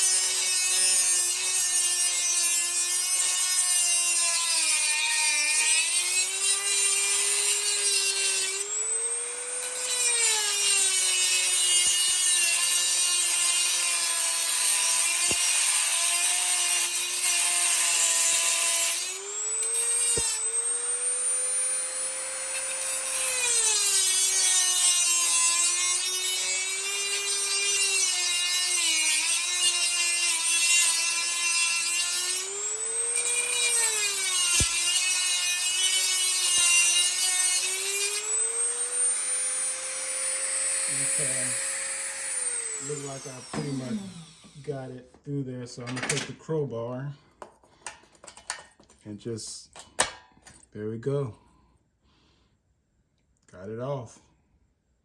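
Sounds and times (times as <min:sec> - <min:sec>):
rotary tool grinding metal: 0:00.0 - 0:44.9.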